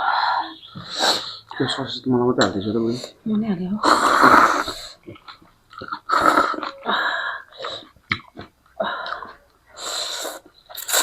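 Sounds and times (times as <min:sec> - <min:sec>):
person slurping noodles: 0:00.8 - 0:01.4, 0:03.8 - 0:05.0, 0:05.7 - 0:07.0, 0:09.8 - 0:11.0.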